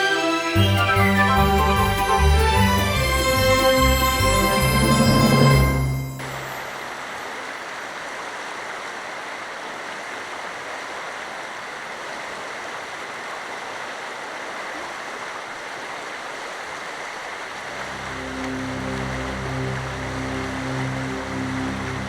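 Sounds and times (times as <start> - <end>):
music: 0.0 - 6.6, 17.7 - 22.0
stream water rushing: 0.0 - 22.0.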